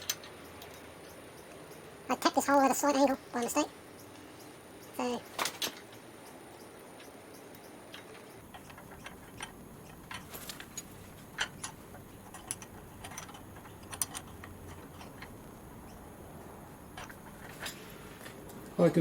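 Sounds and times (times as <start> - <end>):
metal parts and tools clicking: 0.0 - 1.8, 7.0 - 18.6.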